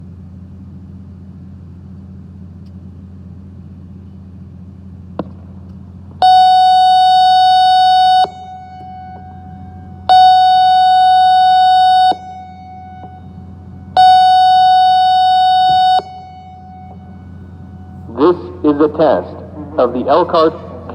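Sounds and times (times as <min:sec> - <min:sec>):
low steady hum: 0:00.0 - 0:20.9
electronic warning siren blasts: 0:06.1 - 0:20.9.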